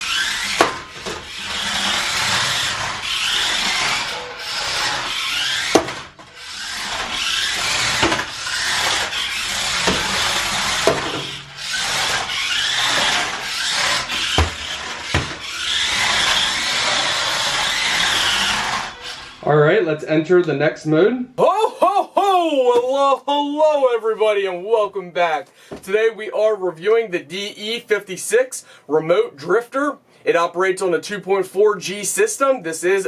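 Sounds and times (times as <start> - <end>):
electric motor whirring: 0.0 - 19.4
tyres scrubbing on hard floor: 0.0 - 19.4.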